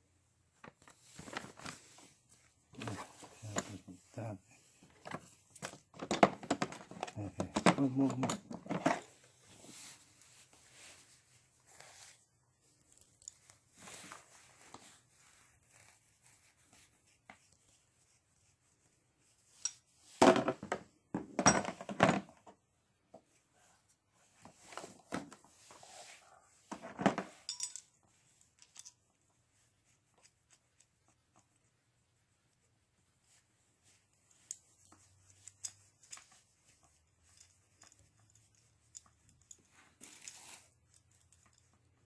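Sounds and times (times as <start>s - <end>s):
tools clattering: 5.0s - 9.1s, 19.6s - 22.3s, 26.7s - 28.0s.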